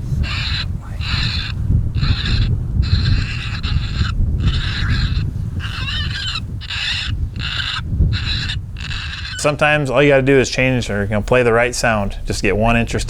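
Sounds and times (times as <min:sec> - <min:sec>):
coyote barks and yips: 0:00.0 - 0:09.5
wind rumbling on microphone: 0:00.0 - 0:13.0.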